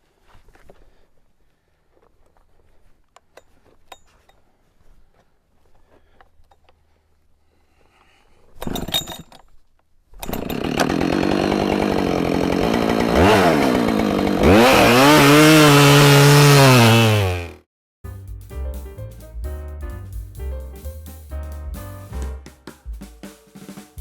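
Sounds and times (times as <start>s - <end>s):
chainsaw running and revving: 10.2s - 17.7s
short rasping burst: 10.2s - 17.7s.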